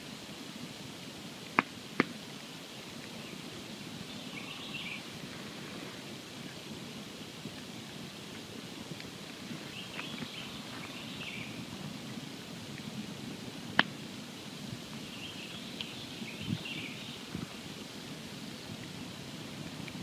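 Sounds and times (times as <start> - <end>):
fire crackling: 0.0 - 20.0
sharp pop of fire: 1.6 - 2.2
campfire flames rushing: 5.0 - 15.2, 16.0 - 20.0.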